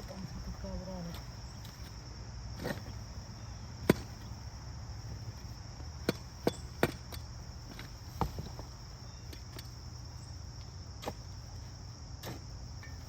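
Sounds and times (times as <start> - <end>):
insects trilling: 0.0 - 13.0
digging tool striking ground: 2.6 - 3.0, 3.8 - 4.3, 6.0 - 9.8, 11.0 - 11.4, 12.2 - 13.0.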